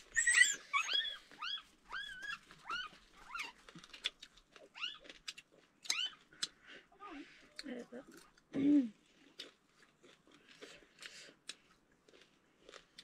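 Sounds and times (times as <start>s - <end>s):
dog whimpering: 0.0s - 3.6s.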